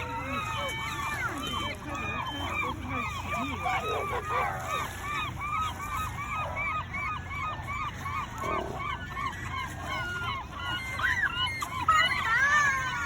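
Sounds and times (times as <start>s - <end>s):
gulls calling: 0.0s - 13.0s.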